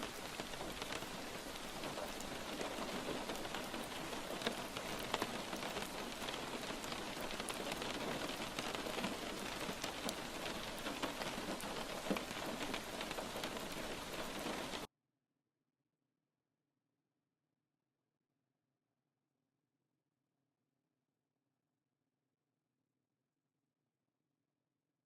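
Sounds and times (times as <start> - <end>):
sharp ticks of raindrops: 0.0 - 14.9
steady rain falling: 0.0 - 14.9.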